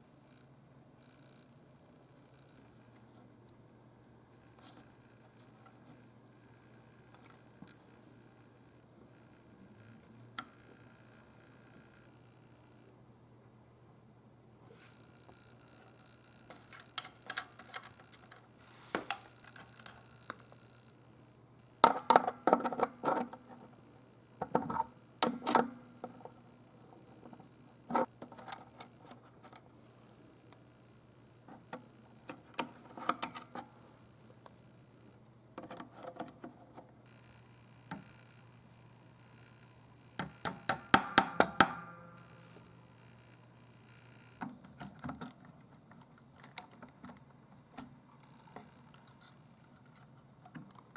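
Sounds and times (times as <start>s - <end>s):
steady low hum: 0.0s - 50.9s.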